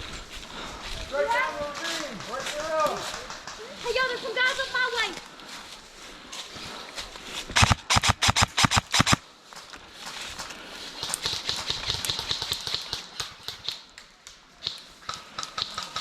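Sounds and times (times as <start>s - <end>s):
crunching footsteps: 0.0s - 16.0s
airsoft rifle rapid shots: 7.5s - 9.2s, 11.0s - 13.8s, 14.6s - 16.0s.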